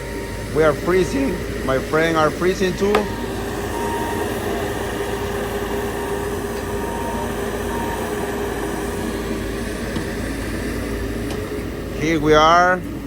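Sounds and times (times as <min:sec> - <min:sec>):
machine running with hum: 0:00.0 - 0:13.0.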